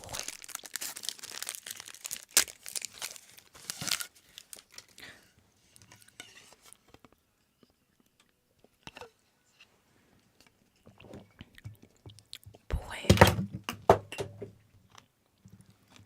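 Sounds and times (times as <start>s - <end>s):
food wrapper crinkling and tearing: 0.0s - 6.8s.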